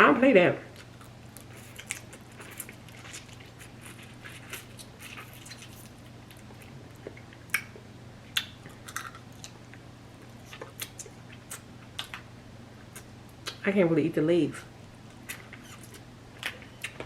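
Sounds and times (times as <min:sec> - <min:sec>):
chewing and biting crab: 0:00.8 - 0:07.7.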